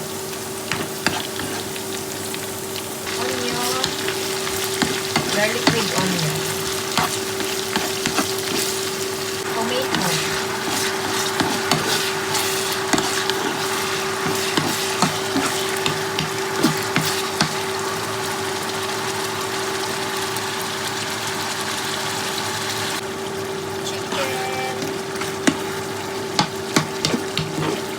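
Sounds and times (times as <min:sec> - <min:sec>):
vegetables sizzling in hot oil: 0:00.0 - 0:27.9
spatula scraping a pan: 0:00.7 - 0:01.8, 0:03.2 - 0:17.6, 0:23.8 - 0:27.9.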